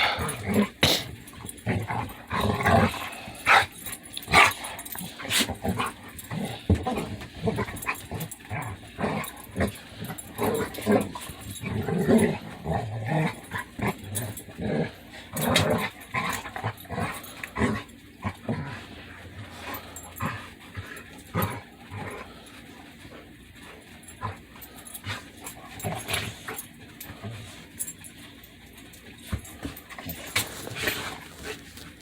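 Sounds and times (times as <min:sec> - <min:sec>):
dogs sneezing: 0:00.0 - 0:01.4, 0:04.3 - 0:05.6
dogs growling: 0:00.0 - 0:32.0.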